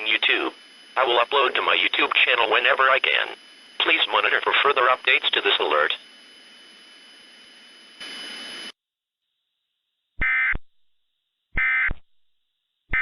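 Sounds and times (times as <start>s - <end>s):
harsh buzzy data bursts: 0.0s - 8.7s.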